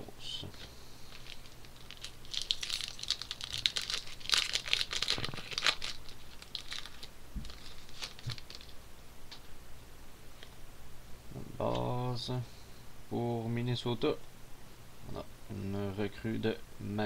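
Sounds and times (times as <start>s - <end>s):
wrapper tearing and crinkling: 1.1s - 8.8s.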